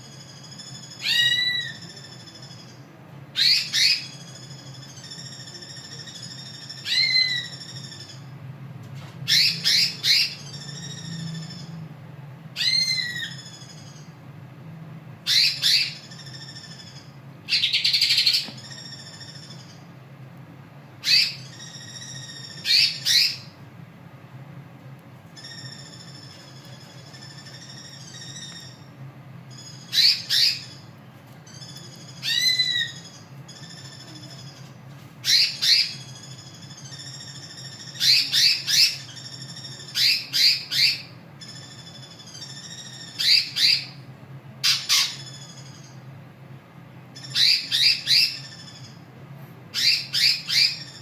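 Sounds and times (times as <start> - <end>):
low steady hum: 0.0 - 51.0
high twittering: 3.4 - 8.4, 9.3 - 11.9, 15.2 - 19.9, 21.0 - 23.6, 25.3 - 46.1, 49.7 - 51.0.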